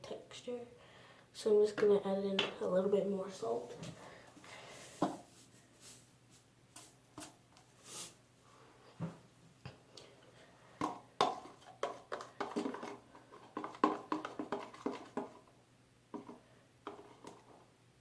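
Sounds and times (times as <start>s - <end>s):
stirring knocks and scrapes: 3.5s - 8.2s, 10.8s - 15.5s, 16.1s - 17.6s
salt pouring rush: 7.8s - 8.2s.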